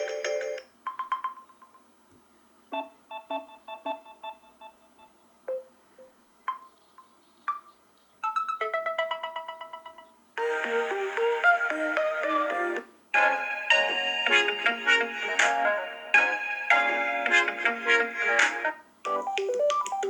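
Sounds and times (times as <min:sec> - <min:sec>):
electronic ringtone notes: 0:00.0 - 0:01.6, 0:02.8 - 0:15.3
dense ringtone: 0:02.8 - 0:06.7, 0:07.5 - 0:14.9.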